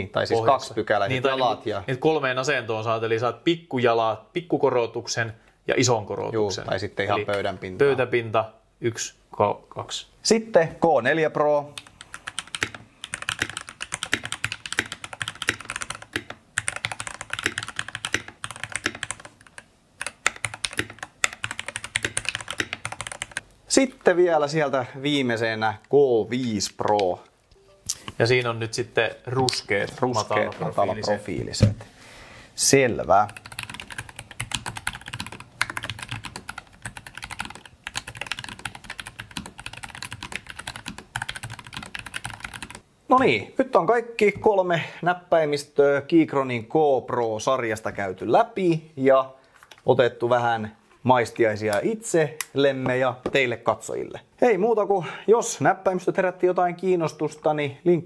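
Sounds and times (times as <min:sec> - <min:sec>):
fast mechanical keyboard typing: 0:11.8 - 0:23.4, 0:33.2 - 0:42.8.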